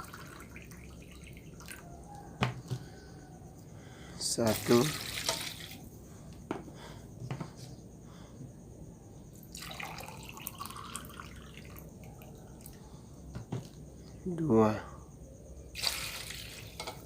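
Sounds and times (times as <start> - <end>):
water dripping: 0.0 - 1.8
water pouring into a pot: 0.0 - 1.8, 4.5 - 5.8, 9.5 - 12.2, 15.8 - 17.0.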